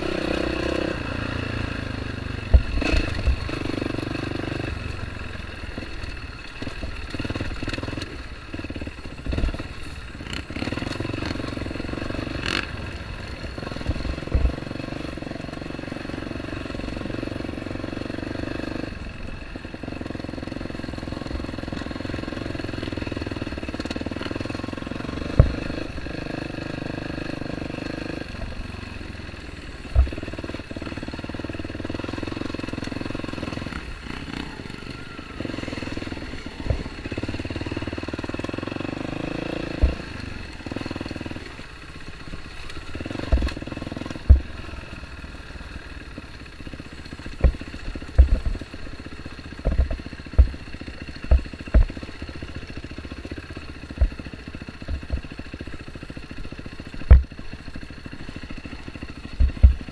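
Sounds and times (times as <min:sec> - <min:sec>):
dirt bike engine running: 0:00.0 - 0:59.9
sharp knocks: 0:57.1 - 0:57.3.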